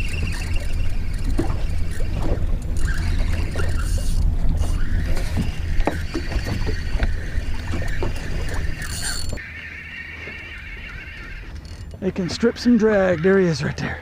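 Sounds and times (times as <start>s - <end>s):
fishing reel drag buzzing: 0.0s - 9.5s
low wind rumble: 0.0s - 14.0s.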